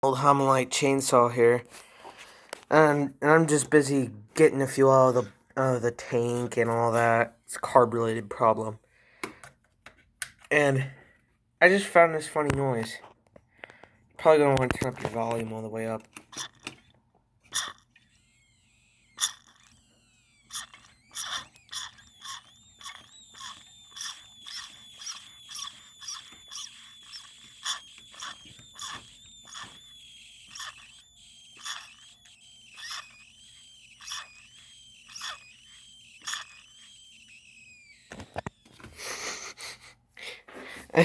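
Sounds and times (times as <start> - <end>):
sharp clicks: 13.6 - 39.0
chainsaw high-pitched whine: 17.5 - 39.8.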